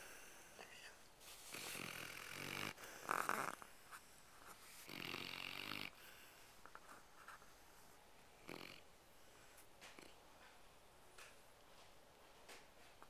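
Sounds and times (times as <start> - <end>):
dog snoring: 1.4 - 3.7, 4.8 - 6.0, 8.4 - 8.9, 9.9 - 10.2.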